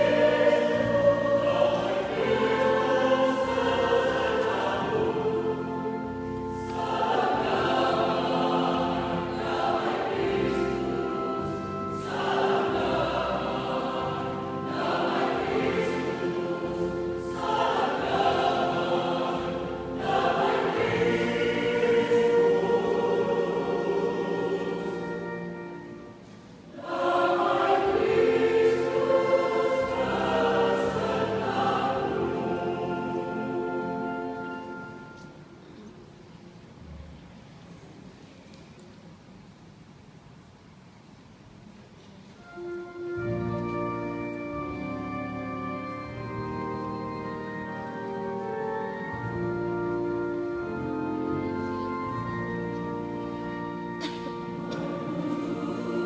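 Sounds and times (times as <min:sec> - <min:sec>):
choir singing in parts: 0:00.0 - 0:35.3, 0:54.0 - 0:56.0.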